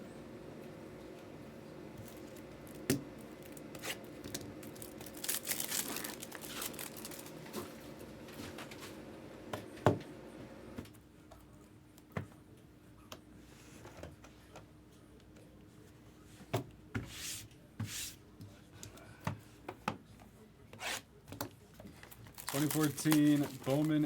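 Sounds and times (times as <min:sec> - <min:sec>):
packaging rustling: 0:02.0 - 0:07.8, 0:22.0 - 0:24.0.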